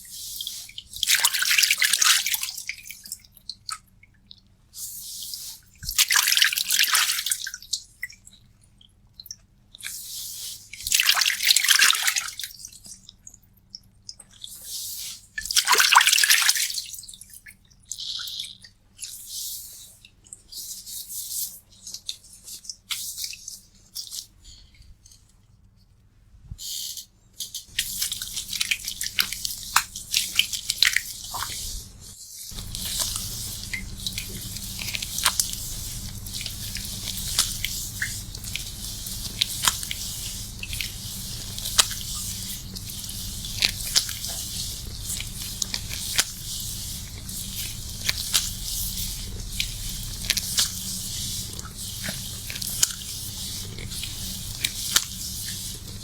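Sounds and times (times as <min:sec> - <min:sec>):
wet hair being scrubbed: 0:00.0 - 0:02.8, 0:05.1 - 0:07.6, 0:14.6 - 0:16.9, 0:27.6 - 0:56.0
low steady hum: 0:27.7 - 0:56.0.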